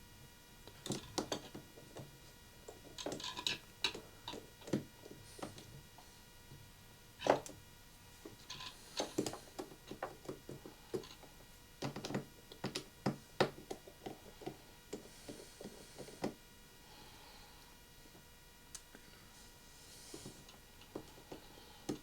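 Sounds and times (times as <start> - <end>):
small tools clicking and tapping: 0.7 - 2.1, 2.7 - 5.7, 8.3 - 16.4.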